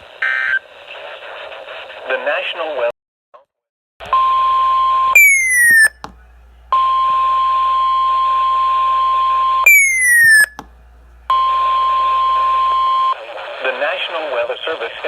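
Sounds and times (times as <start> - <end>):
radio hiss: 0.0 - 2.9, 11.5 - 15.0
steady high alarm tone: 4.4 - 6.0, 6.8 - 10.5
falling electronic chirp: 5.2 - 6.0, 8.5 - 10.6.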